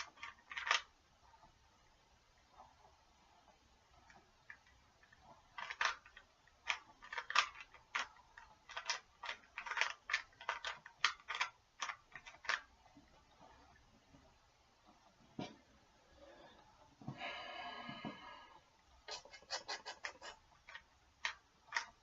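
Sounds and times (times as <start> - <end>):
puzzle cube clicking: 0.0 - 0.9, 4.5 - 12.7, 19.6 - 22.0.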